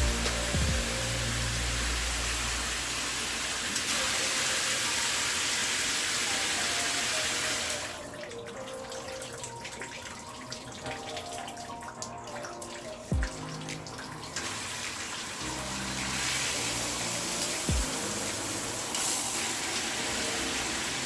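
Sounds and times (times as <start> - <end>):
shower head spraying water: 0.0 - 8.0, 13.3 - 21.0.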